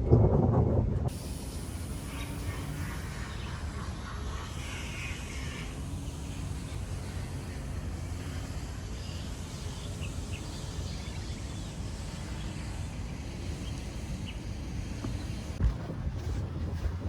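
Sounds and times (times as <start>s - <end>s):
low rumble: 0.0s - 1.4s.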